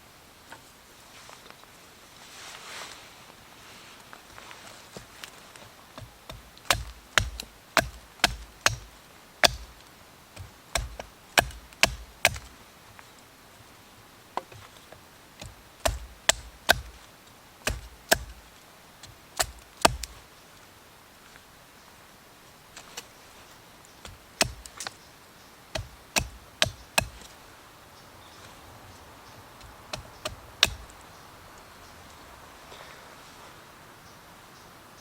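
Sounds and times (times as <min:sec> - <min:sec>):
blade chopping wood: 0:06.0 - 0:09.8, 0:10.4 - 0:12.5, 0:15.4 - 0:17.0, 0:17.6 - 0:18.4, 0:19.0 - 0:20.2, 0:24.1 - 0:24.9, 0:25.7 - 0:27.3, 0:29.9 - 0:30.9.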